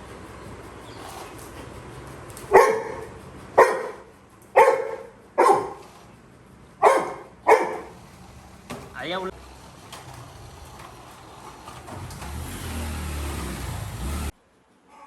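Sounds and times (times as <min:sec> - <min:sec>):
puppy barking: 0:02.4 - 0:06.0, 0:06.8 - 0:08.1.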